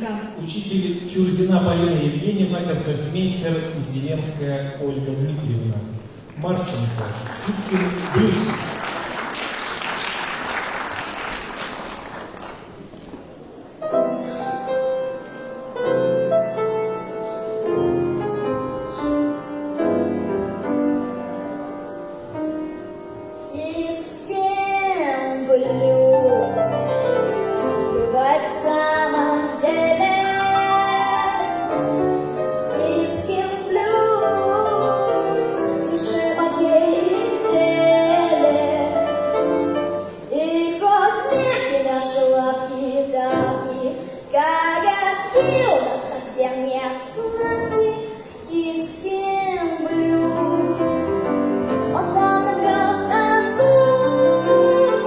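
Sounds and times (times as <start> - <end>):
applause: 6.5 - 12.8
girl singing wordless notes: 22.8 - 55.0.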